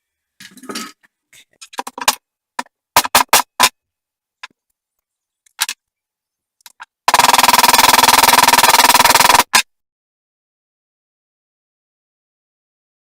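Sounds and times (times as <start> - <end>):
plastic parts clicking and knocking: 1.6 - 3.8, 4.4 - 4.8, 5.4 - 5.9, 6.6 - 9.7.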